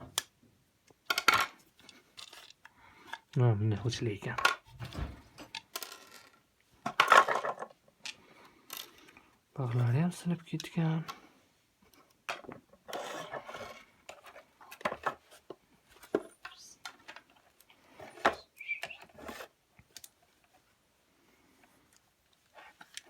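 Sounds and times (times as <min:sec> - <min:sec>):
plastic housing clicks and scraping: 0:01.1 - 0:03.4.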